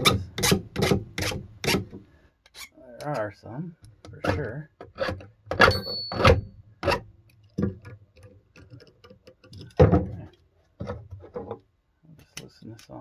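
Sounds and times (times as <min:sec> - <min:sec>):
hand file scraping on steel: 0:00.0 - 0:01.9.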